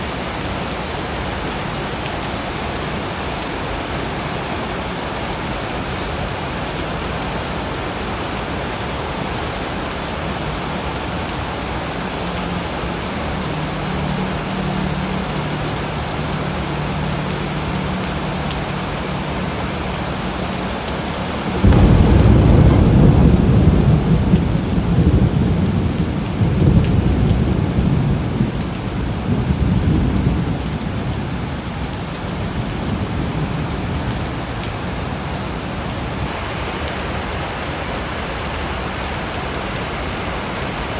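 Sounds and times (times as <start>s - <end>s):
steady rain falling: 0.0s - 40.9s
thunder crack and rumble: 21.5s - 36.3s.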